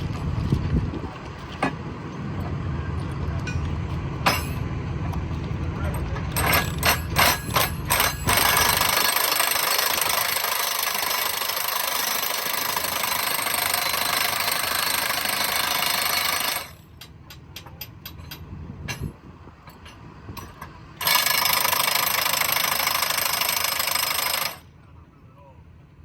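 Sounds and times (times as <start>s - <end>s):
impact wrench hammering: 4.3s - 4.6s, 6.4s - 19.1s, 20.4s - 24.6s.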